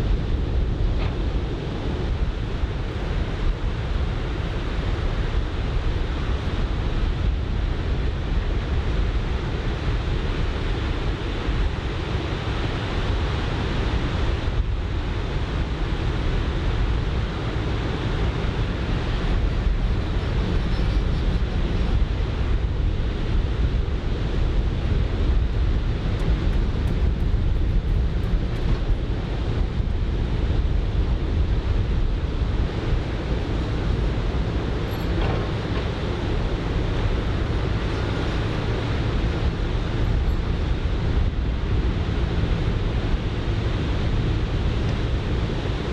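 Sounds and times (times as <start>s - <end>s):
wind buffeting microphone: 0.0s - 45.9s.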